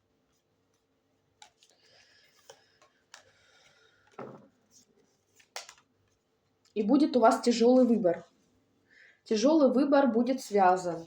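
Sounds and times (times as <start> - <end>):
faint clicks and taps: 0.7 - 3.4.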